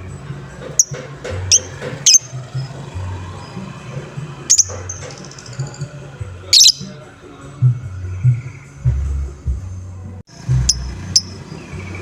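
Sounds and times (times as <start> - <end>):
lovebird squeaking: 0.7 - 2.8, 4.5 - 7.0.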